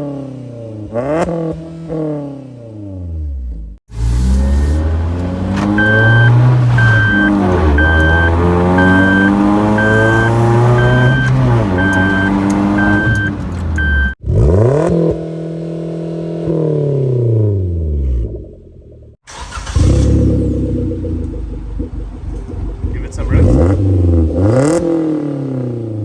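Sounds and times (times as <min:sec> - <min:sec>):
car engine revving: 0:00.0 - 0:26.0
repeating electronic beep: 0:05.8 - 0:14.2.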